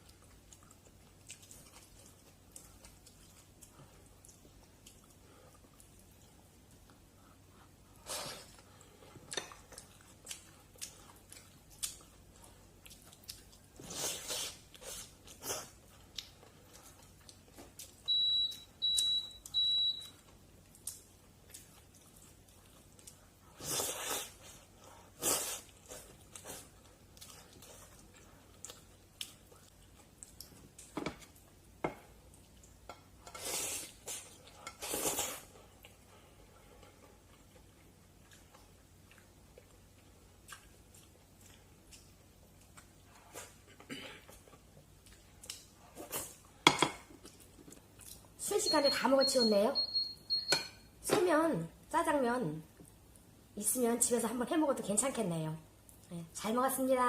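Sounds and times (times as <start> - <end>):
short high beeps: 48.7 - 50.9.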